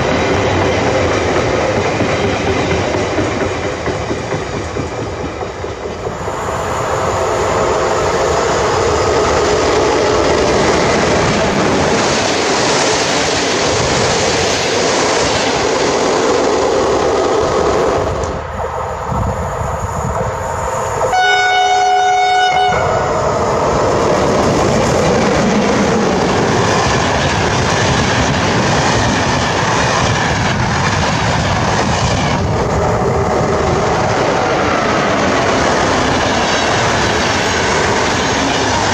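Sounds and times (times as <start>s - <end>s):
train rumbling: 0.0s - 38.9s
train horn blast: 21.1s - 23.0s.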